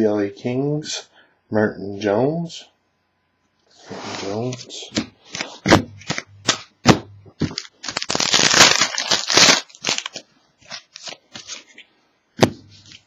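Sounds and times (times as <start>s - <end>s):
foil packaging crinkling: 7.4s - 11.9s.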